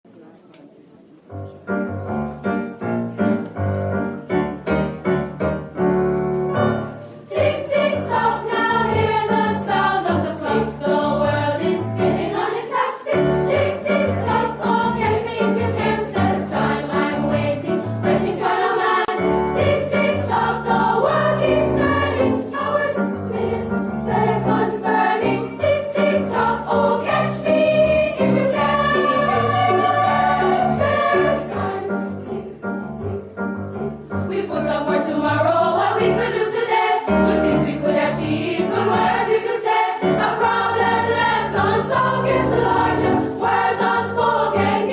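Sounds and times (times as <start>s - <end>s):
instrumental accompaniment: 1.3s - 44.9s
school choir singing: 6.7s - 44.9s.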